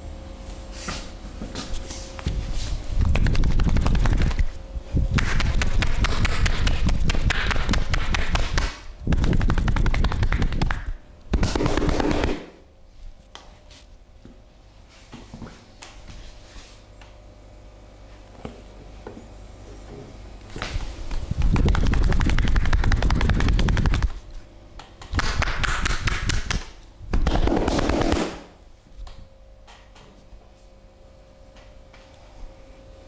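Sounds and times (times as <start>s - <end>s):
hands slapping on body: 3.0s - 4.5s, 5.1s - 12.5s, 21.4s - 24.2s, 25.0s - 28.5s.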